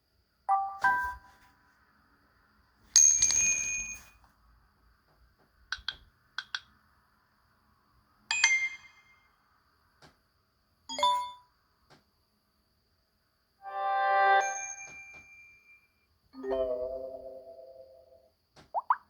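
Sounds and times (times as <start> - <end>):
bright notification chimes: 13.7 - 15.6, 16.4 - 18.2.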